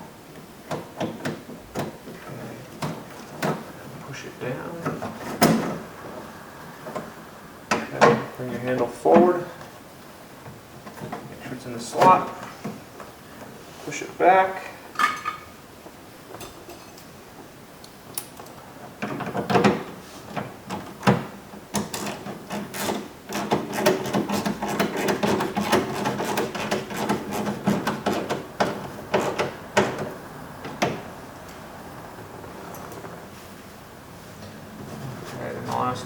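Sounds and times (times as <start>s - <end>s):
rubbing and rattling: 21.8s - 31.0s.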